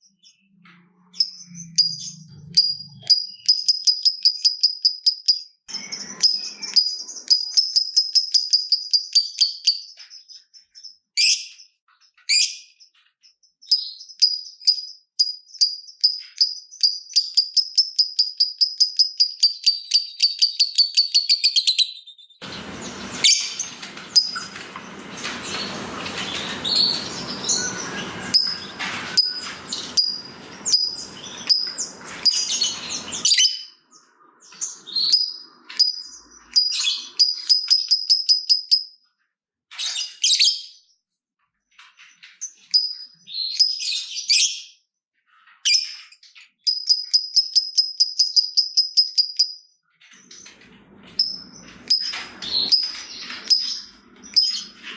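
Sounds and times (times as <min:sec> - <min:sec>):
bird ticking chirps: 0:01.1 - 0:10.0, 0:13.7 - 0:21.5, 0:22.4 - 0:33.5, 0:34.6 - 0:38.9
bird squawks: 0:22.4 - 0:33.8
bird harsh chatter: 0:22.4 - 0:37.9.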